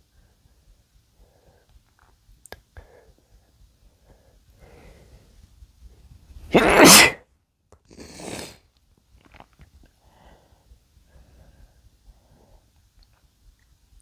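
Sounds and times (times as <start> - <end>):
man sneezing: 6.5 - 7.2, 8.0 - 8.5.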